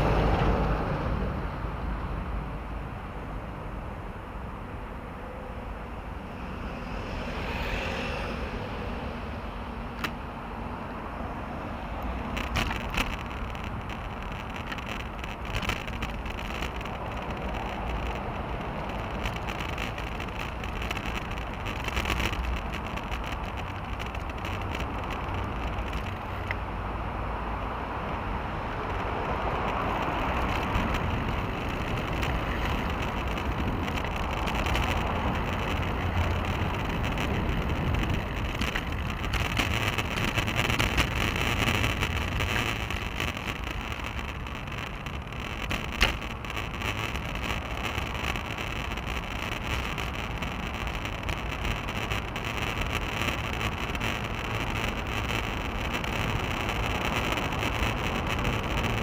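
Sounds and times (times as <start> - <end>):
wind and tyre rumble: 0.0 - 59.0
bicycle clicks and rattles: 12.1 - 26.6.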